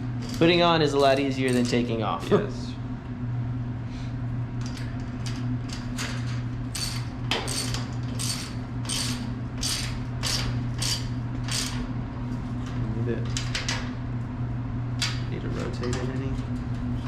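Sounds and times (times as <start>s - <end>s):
steady low hum: 0.0s - 17.0s
ratchet wrench clicking: 6.8s - 11.8s.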